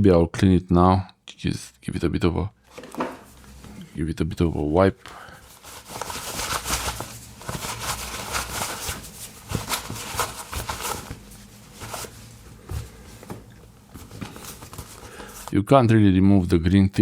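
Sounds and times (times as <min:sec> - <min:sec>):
scratchy rubbing strokes: 0:05.5 - 0:13.1.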